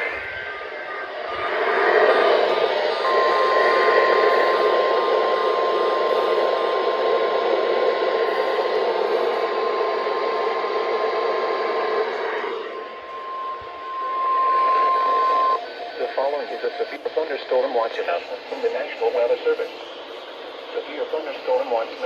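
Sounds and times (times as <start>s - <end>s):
weather radio alert tone: 0.0s - 7.1s, 12.3s - 19.7s
loud radio static: 0.0s - 22.0s.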